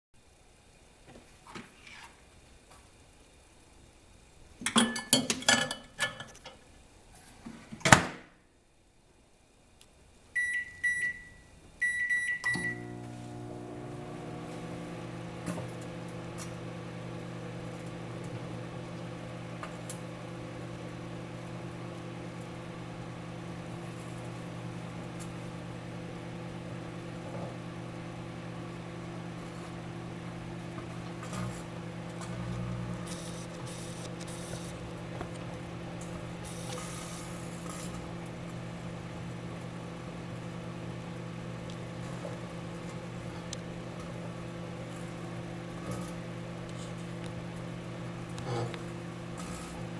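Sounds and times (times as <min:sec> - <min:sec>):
microwave oven humming: 0:10.3 - 0:49.9
keypad beeps: 0:10.4 - 0:12.8.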